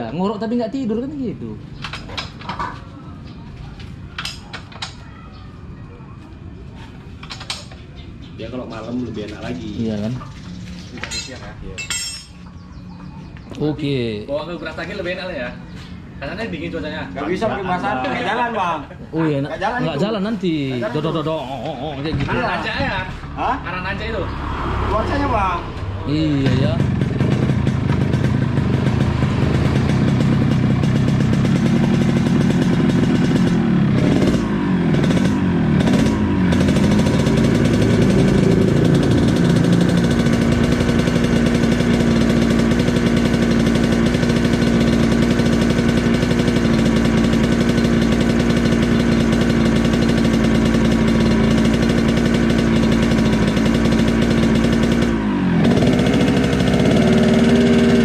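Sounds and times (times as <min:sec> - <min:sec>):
two-stroke motorcycle engine revving: 0:22.1 - 0:58.0.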